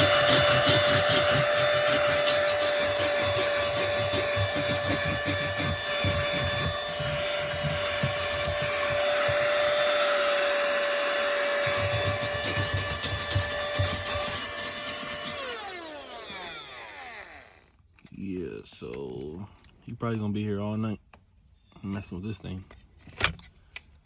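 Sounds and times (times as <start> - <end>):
vacuum nozzle rubbing and knocking: 0.0 - 16.4
handheld vacuum whining: 0.0 - 17.7.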